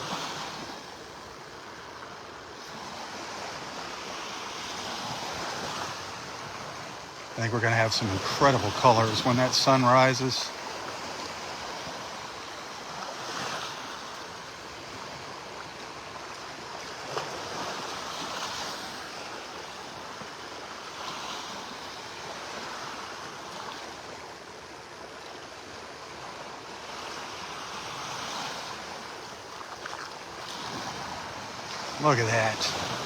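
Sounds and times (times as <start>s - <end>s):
waves breaking on beach: 0.0s - 33.0s.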